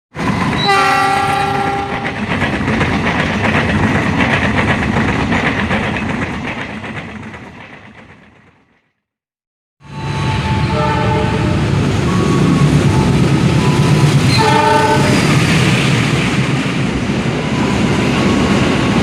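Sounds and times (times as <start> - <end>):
train wheels clattering: 0.2 - 8.8
train horn: 0.6 - 2.2, 10.1 - 12.4, 14.3 - 15.4.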